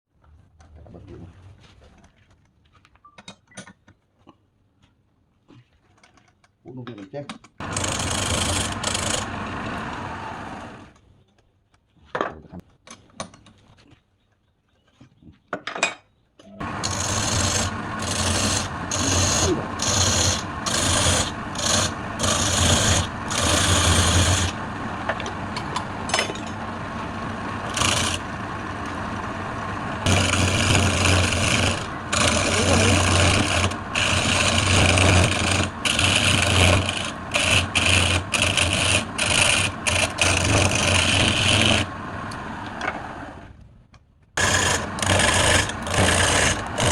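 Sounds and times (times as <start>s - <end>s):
wood rasping on a lathe: 7.6s - 10.8s, 16.6s - 26.0s, 26.6s - 42.5s, 44.4s - 46.9s
lathe motor hum: 7.6s - 10.9s, 16.6s - 43.5s, 44.4s - 46.9s.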